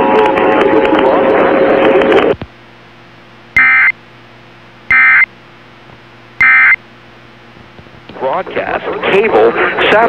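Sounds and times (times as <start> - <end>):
faint steady hum: 0.1 - 10.0
buzzy digital data bursts: 3.6 - 3.9.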